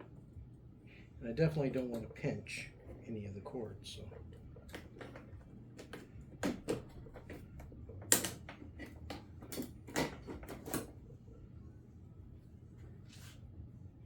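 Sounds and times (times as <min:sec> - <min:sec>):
clicks and knocks of handling parts: 0:04.0 - 0:11.0.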